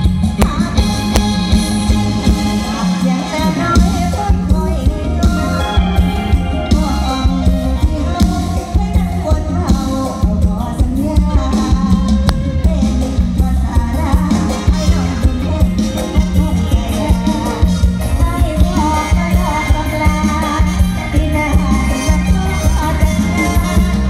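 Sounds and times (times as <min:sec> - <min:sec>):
wavering lead melody: 0:00.0 - 0:09.9
bass and drum beat: 0:00.0 - 0:24.0.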